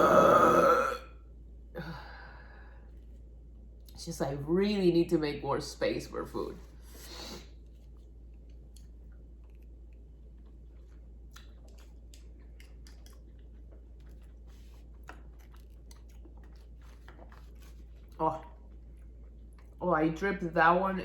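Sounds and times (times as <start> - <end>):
person chewing crunchy food: 0.0 - 1.0, 7.6 - 19.8
steady low hum: 0.0 - 21.0
wet mouth clicks: 11.3 - 13.5.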